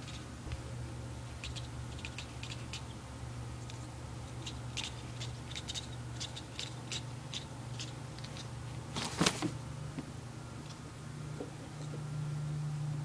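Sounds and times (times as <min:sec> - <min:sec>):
kitten chattering: 0:01.4 - 0:03.0, 0:04.3 - 0:08.0.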